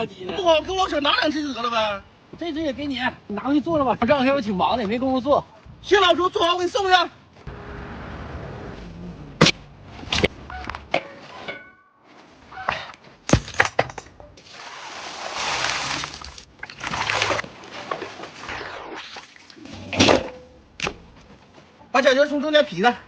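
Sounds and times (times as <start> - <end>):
sharp knocks and cracks: 9.4 - 11.1, 12.7 - 14.3, 20.8 - 21.1.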